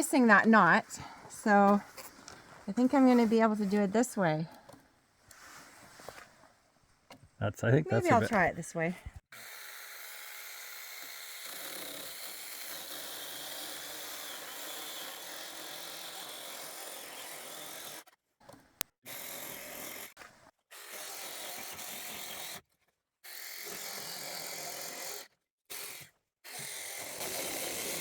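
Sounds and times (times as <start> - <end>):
electric chainsaw cutting wood: 9.4 - 18.1, 19.1 - 22.6, 23.3 - 28.0.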